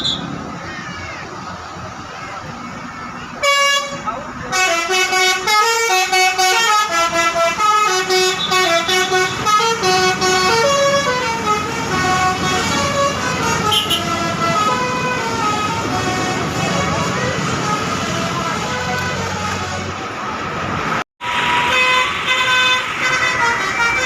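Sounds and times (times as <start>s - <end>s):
engine rumble: 0.0s - 24.0s
traffic: 0.0s - 24.0s
bus musical horn tune: 3.4s - 20.0s, 21.5s - 24.0s.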